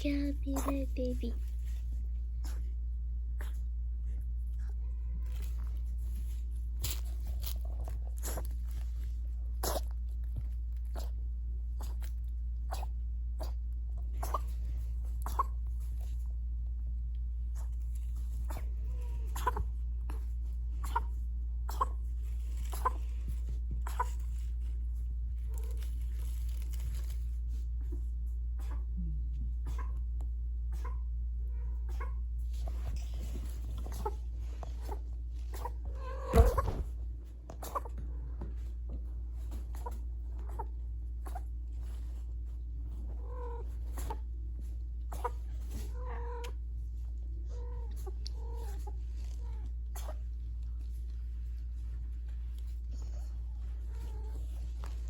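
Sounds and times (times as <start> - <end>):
steady low hum: 0.0 - 55.0
kitten coughing: 0.2 - 1.0, 20.8 - 22.0, 37.6 - 38.0, 49.9 - 50.3.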